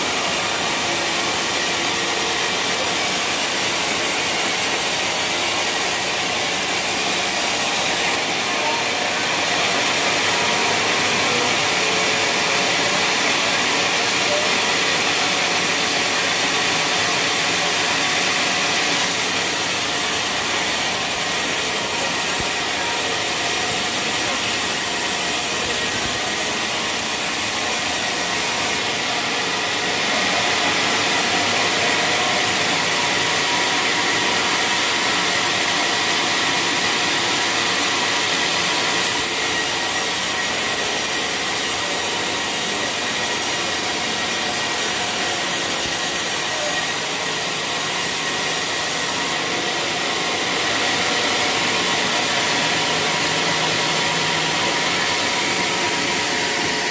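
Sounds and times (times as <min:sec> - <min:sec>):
saw cutting wood: 0:00.0 - 0:56.9.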